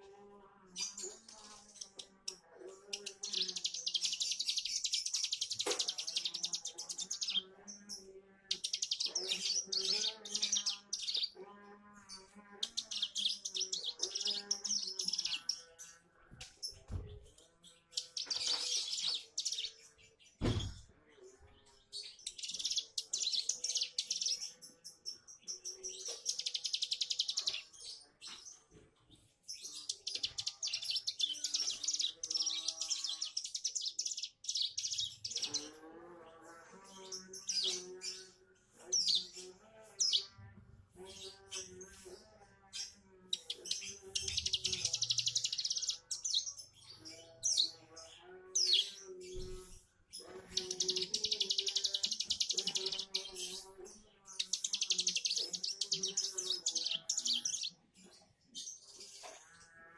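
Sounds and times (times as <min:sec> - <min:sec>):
songbird buzzing trills: 0:50.6 - 0:53.3.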